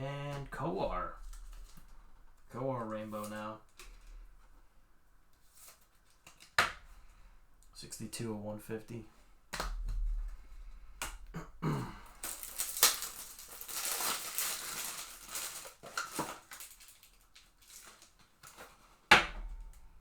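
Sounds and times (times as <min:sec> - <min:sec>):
plastic and foil wrappers crinkling: 0:01.2 - 0:04.4, 0:12.0 - 0:19.8
cards and packaging clicking: 0:05.4 - 0:06.8, 0:12.2 - 0:18.9.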